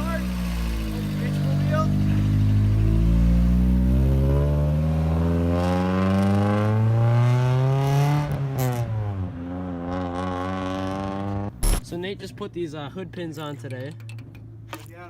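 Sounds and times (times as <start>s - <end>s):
large vehicle engine accelerating: 0.0s - 11.6s.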